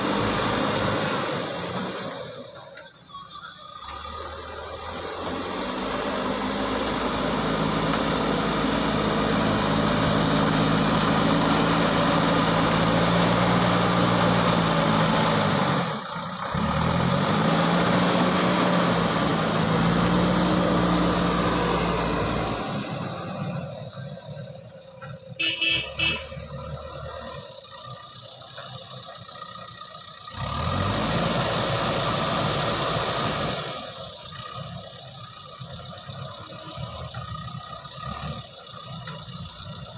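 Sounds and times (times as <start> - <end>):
heavy diesel engine under load: 0.0 - 39.9
short horn toots: 25.4 - 26.4.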